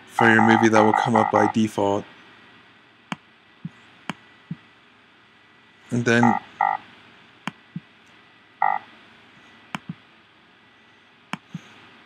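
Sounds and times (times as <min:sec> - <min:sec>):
croaking electronic alert tone: 0:00.2 - 0:01.6, 0:06.2 - 0:06.8, 0:08.6 - 0:08.8.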